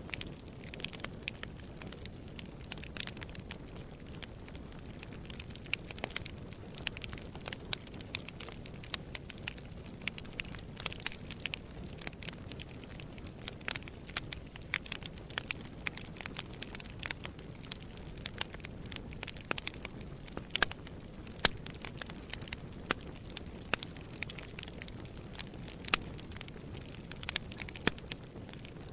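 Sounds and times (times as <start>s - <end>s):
fire crackling and popping: 0.0s - 28.9s
fire rumbling: 0.0s - 28.9s.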